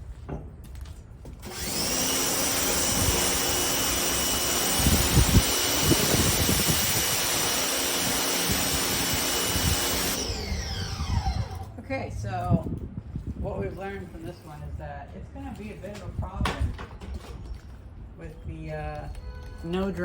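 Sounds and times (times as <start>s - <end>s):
pressure washer pump whine: 1.4s - 11.7s
high-pressure water jet hissing: 1.5s - 11.7s.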